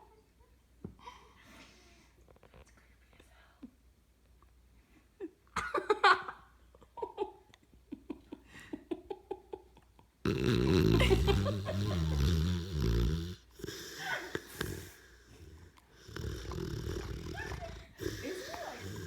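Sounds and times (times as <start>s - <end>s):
dog snoring: 10.2s - 19.0s.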